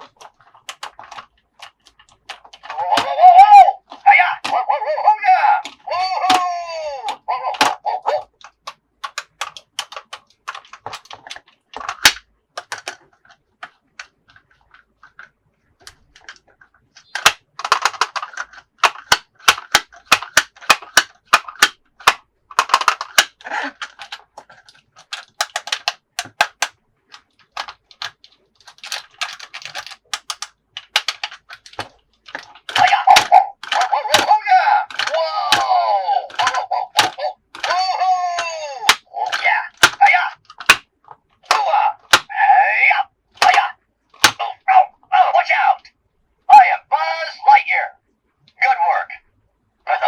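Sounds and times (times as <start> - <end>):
plastic toy parts clicking: 0.0 - 44.6
packaging crinkling: 8.3 - 37.8.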